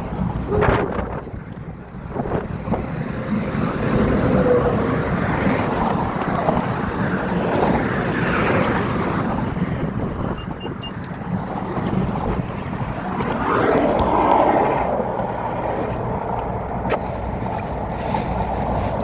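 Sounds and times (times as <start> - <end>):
highway traffic passing: 0.0 - 19.0
wind buffeting microphone: 0.0 - 19.0.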